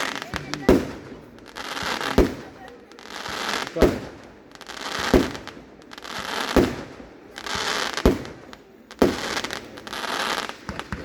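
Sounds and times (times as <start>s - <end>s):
firework hiss: 0.0s - 11.0s
firework shells bursting: 0.0s - 11.0s.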